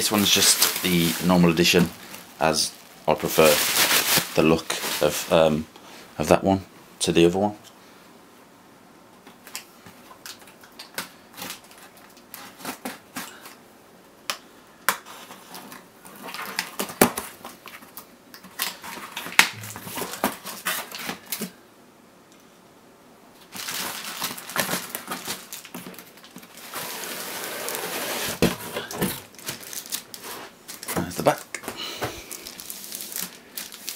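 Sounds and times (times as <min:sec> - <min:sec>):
cardboard rustling and scraping: 0:00.0 - 0:05.5, 0:18.8 - 0:21.5, 0:23.5 - 0:33.9.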